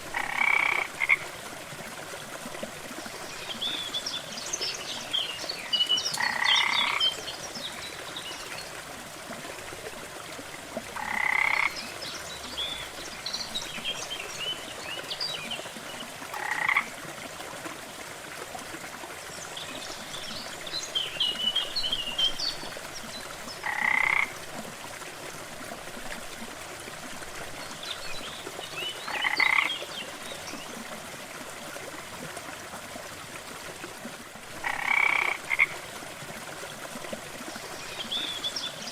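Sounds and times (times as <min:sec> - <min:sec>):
small waterfall rushing: 0:00.0 - 0:38.9
frog croaking: 0:00.1 - 0:01.2, 0:06.2 - 0:07.0, 0:11.0 - 0:11.8, 0:16.4 - 0:16.9, 0:23.6 - 0:24.3, 0:29.1 - 0:29.7, 0:34.6 - 0:35.8.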